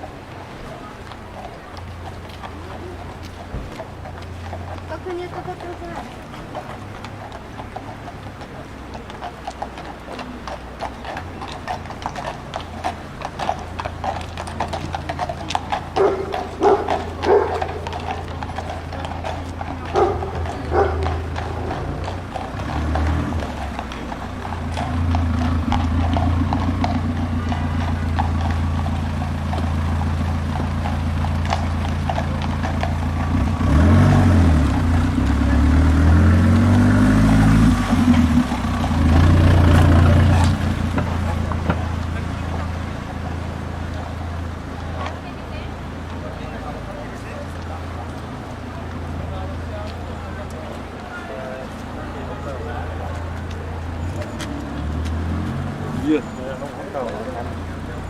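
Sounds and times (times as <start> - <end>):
horse hooves clip-clopping: 0.0 - 58.0
vehicle engine hum: 0.0 - 58.0.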